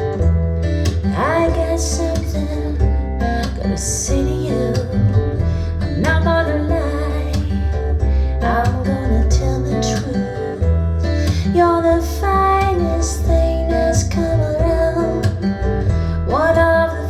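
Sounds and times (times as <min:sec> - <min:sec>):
acoustic guitar: 0:00.0 - 0:17.0
bass line: 0:00.0 - 0:17.0.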